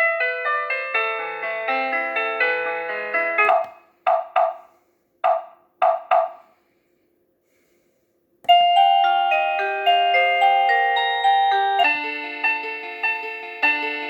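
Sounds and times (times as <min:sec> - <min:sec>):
doorbell knocking tune: 0:03.4 - 0:04.6, 0:05.2 - 0:06.4
doorbell chiming tune: 0:08.5 - 0:14.0.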